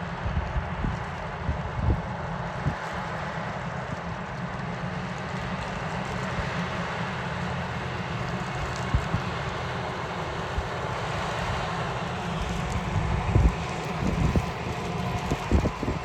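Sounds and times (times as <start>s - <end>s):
wind noise on microphone: 0.2s - 2.9s, 12.3s - 16.0s
tractor diesel engine running: 4.0s - 16.0s.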